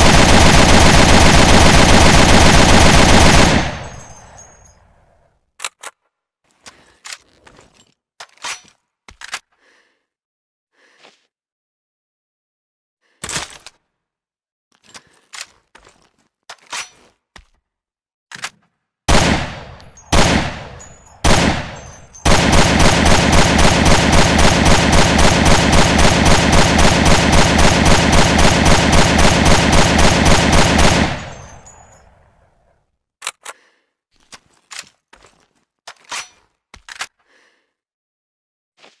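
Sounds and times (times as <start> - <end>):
automatic gunfire: 0.0 - 4.4, 19.1 - 31.9
rifle single shots: 0.0 - 4.4, 19.1 - 31.9.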